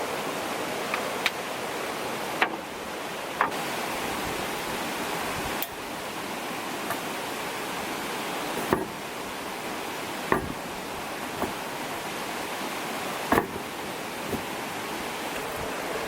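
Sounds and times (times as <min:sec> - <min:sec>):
sharp knocks: 0:03.4 - 0:03.6, 0:08.5 - 0:09.2, 0:10.2 - 0:11.8, 0:13.2 - 0:14.5.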